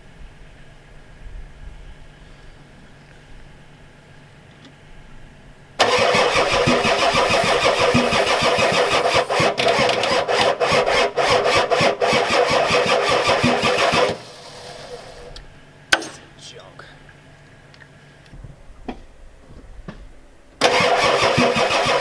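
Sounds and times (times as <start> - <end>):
starter cranking diesel engine: 5.8 - 15.4, 20.6 - 22.0.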